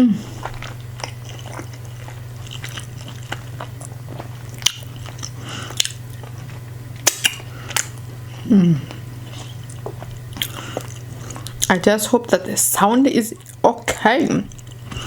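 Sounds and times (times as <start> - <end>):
person chewing: 0.0 - 11.8, 13.3 - 15.0
steady low hum: 0.0 - 15.0
mouth smacks and clicks: 7.0 - 7.9.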